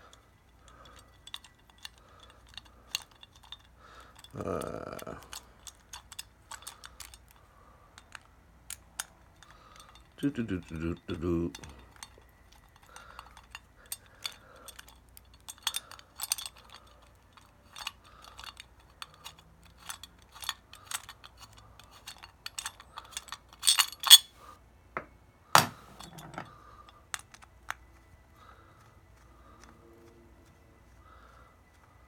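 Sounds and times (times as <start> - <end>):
metal parts clinking: 0.1 - 7.4, 8.0 - 24.4, 25.6 - 26.5
metal clatter: 17.8 - 24.3, 25.6 - 26.5.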